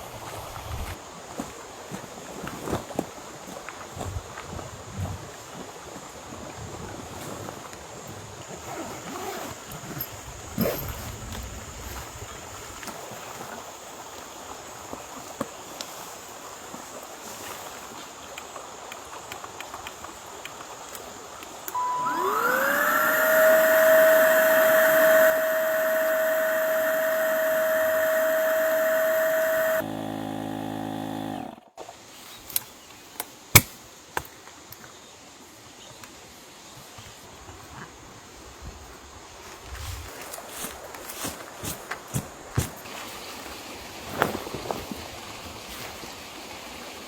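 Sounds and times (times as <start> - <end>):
short beep: 21.7 - 22.5
electric motor whining: 21.7 - 31.7.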